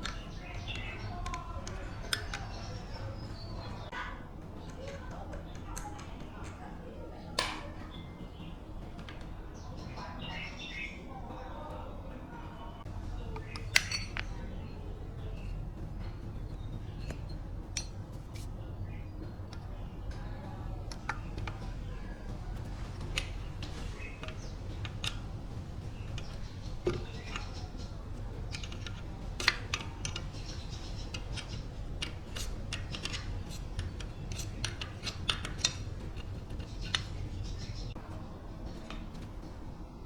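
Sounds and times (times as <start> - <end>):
low steady hum: 0.0 - 40.0
metal tools clinking: 13.3 - 18.6, 20.3 - 38.0.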